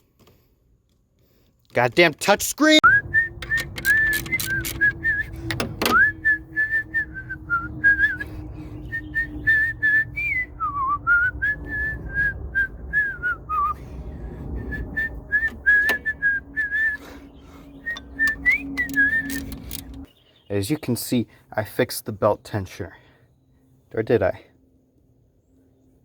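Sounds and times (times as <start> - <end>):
person whistling a tune: 2.8 - 13.8, 14.6 - 17.2, 17.8 - 19.8
sharp clicks and taps: 3.4 - 4.9, 17.9 - 20.1.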